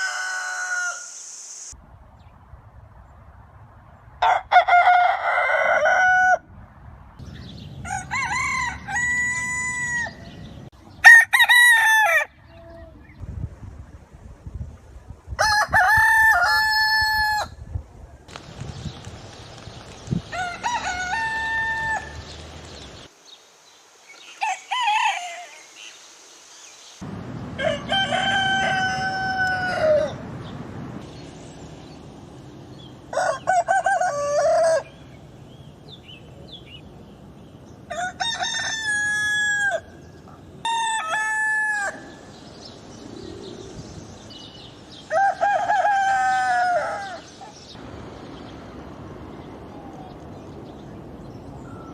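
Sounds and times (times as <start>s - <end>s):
roosters crowing: 0.0s - 1.2s, 4.2s - 6.5s, 7.8s - 12.6s, 15.4s - 17.6s, 20.2s - 23.1s, 24.3s - 25.6s, 27.4s - 30.4s, 32.8s - 35.2s, 37.8s - 47.6s.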